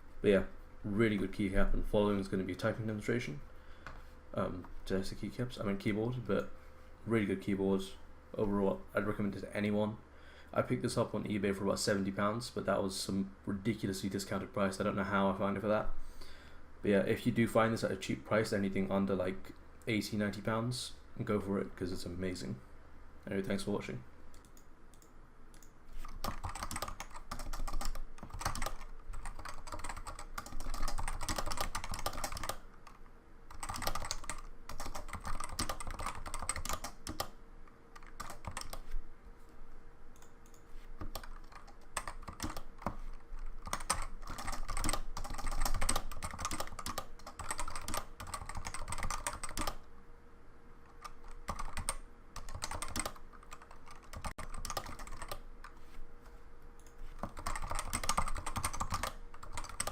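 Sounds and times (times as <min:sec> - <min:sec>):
keyboard typing with muted thock: 0:24.3 - 0:37.3, 0:40.2 - 0:49.8, 0:51.0 - 0:55.4, 0:56.8 - 0:59.9.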